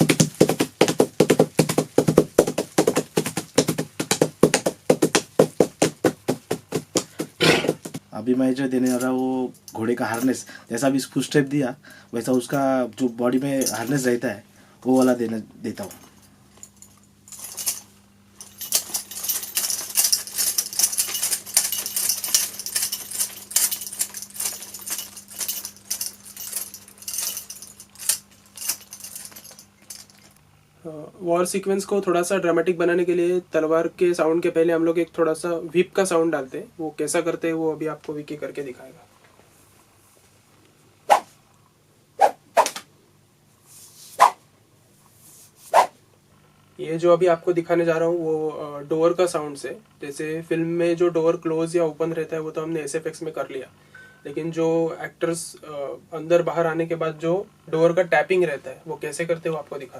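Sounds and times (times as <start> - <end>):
coconut shells clopping like hooves: 0.0 - 8.0
metal pieces jingling and clinking: 16.7 - 30.4.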